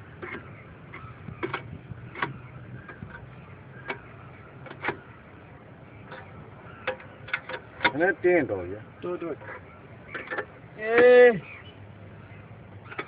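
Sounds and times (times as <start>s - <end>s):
clicks and taps on metal fittings: 0.2s - 5.0s, 6.1s - 8.0s.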